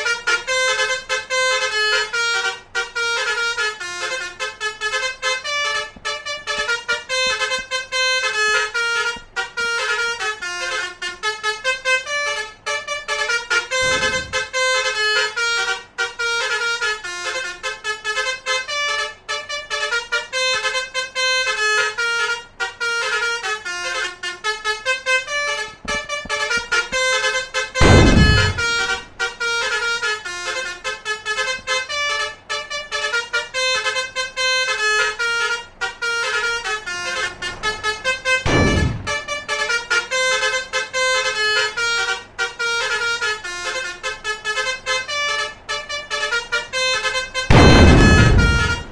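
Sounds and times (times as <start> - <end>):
musical air horn: 0.0 - 48.9
low rumble: 38.5 - 39.4, 47.5 - 48.9.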